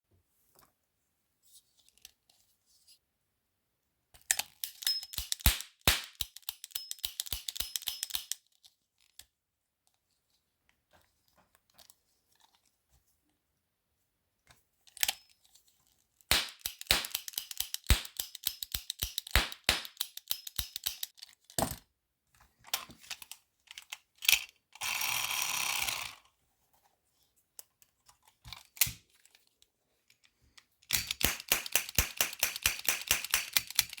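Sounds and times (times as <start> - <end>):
cap gun pops and clicks: 5.1 - 8.4, 16.3 - 21.1, 30.9 - 33.6.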